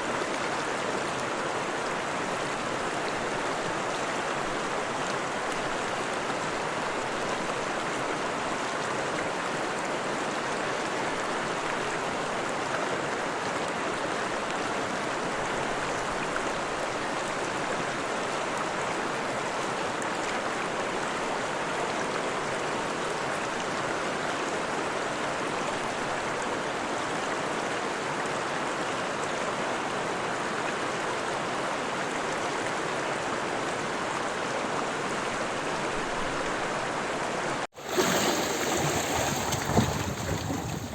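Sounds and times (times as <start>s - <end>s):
water rushing over stones: 37.7s - 40.9s.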